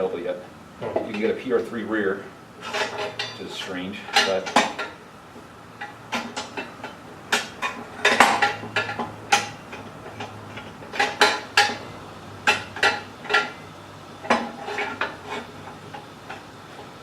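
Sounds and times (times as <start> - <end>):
metal tools clanking: 2.6 - 5.0.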